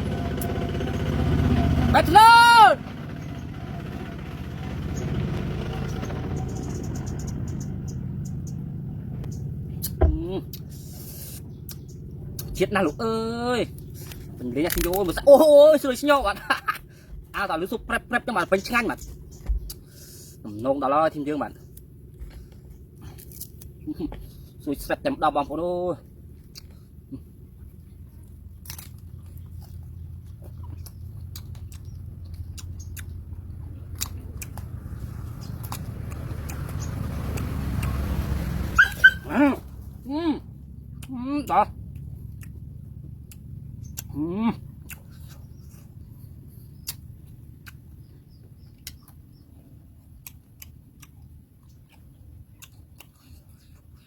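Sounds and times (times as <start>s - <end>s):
low steady rumble: 0.0s - 54.0s
eating clicks and crunches: 9.3s - 12.7s, 13.7s - 17.3s, 18.4s - 20.2s, 21.4s - 25.0s, 26.0s - 38.3s, 40.8s - 54.0s
sharp clicks and crunchy taps: 19.0s - 19.9s.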